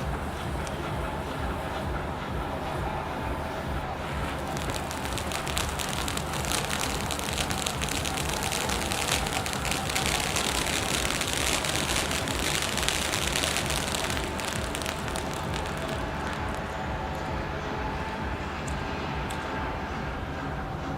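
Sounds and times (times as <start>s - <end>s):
firework hissing and crackling: 3.9s - 17.0s.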